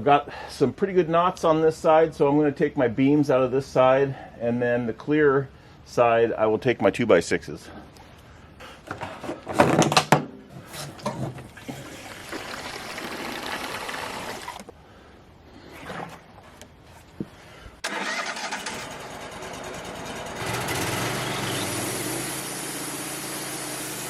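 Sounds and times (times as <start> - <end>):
sawmill engine running: 17.9 - 24.0.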